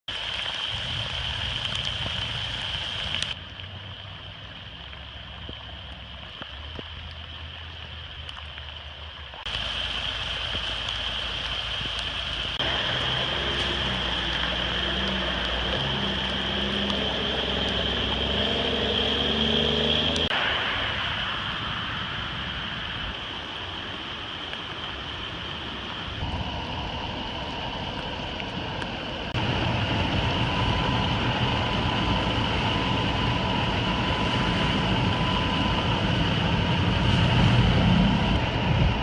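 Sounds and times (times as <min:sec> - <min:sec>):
moving water: 0:00.1 - 0:39.0
rain hiss: 0:00.1 - 0:39.0
vehicle engine running: 0:09.4 - 0:20.3.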